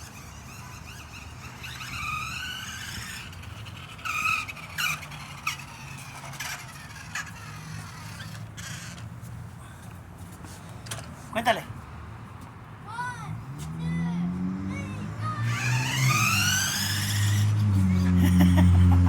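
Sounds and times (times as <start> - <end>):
short squeaks and clicks: 0.0 - 9.1
toy car motor whine: 0.0 - 9.1, 13.8 - 19.0.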